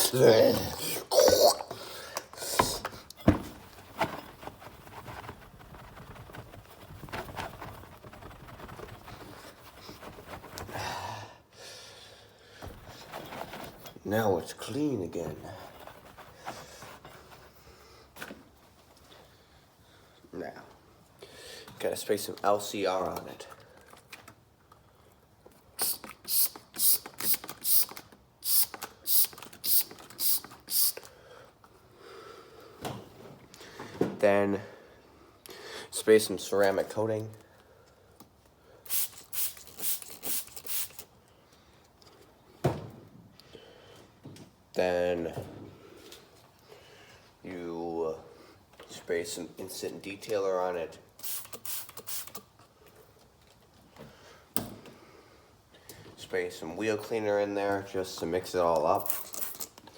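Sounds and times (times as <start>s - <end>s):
spray bottle squirting: 25.8s - 31.1s, 38.9s - 41.1s, 51.2s - 52.5s, 59.0s - 59.8s.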